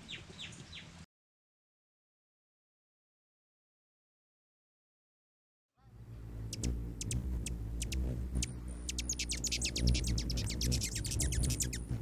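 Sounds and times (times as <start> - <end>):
small birds chirping: 0.0 - 1.0, 5.8 - 12.0
low steady rumble: 5.8 - 12.0.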